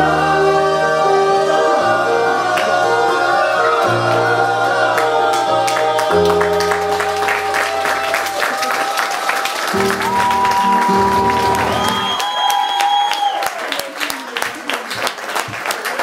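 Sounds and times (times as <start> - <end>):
voices singing together: 0.0 - 12.1
audience applause: 3.8 - 16.0.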